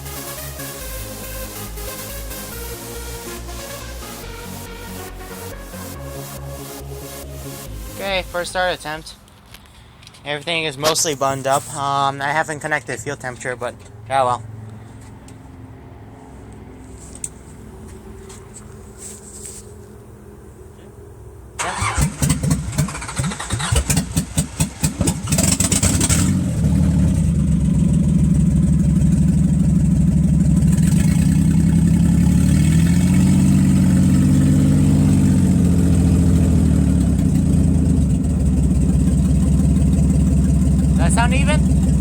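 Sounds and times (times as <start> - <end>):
car engine idling: 0.0 - 15.4, 19.7 - 42.0
engine starter cranking: 21.6 - 26.5.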